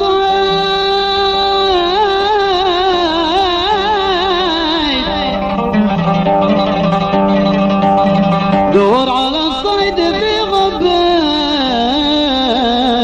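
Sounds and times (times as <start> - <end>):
plucked string melody: 0.0 - 13.0
sustained held notes: 0.0 - 13.0.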